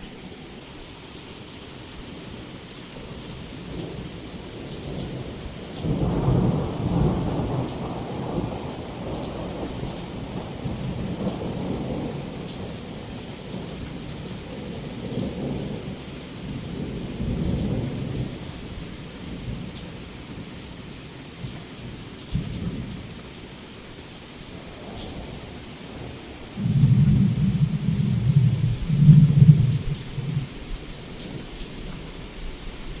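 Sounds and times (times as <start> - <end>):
heavy rain falling: 0.0 - 33.0
rolling thunder: 5.1 - 18.4, 24.8 - 31.4.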